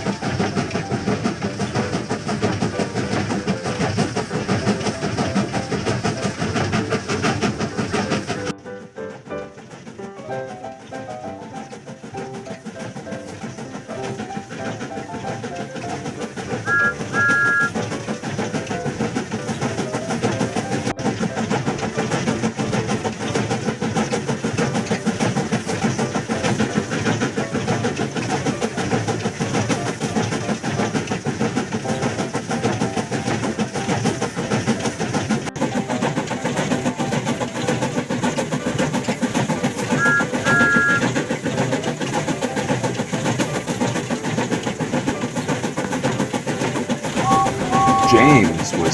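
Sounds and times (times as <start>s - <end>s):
train chugging and rattling: 0.0s - 48.9s
two-note train horn toot: 16.7s - 17.8s, 40.0s - 41.0s, 47.2s - 48.8s
background music: 35.6s - 48.9s.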